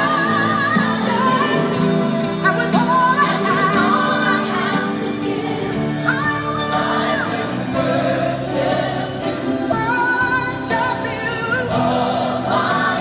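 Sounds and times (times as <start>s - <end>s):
song with solo singer: 0.0s - 13.0s.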